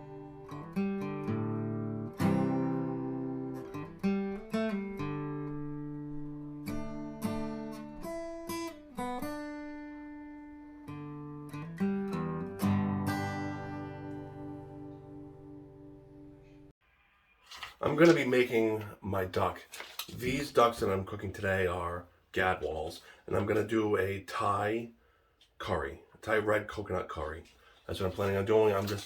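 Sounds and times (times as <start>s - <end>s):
acoustic guitar strumming: 0.0s - 16.3s.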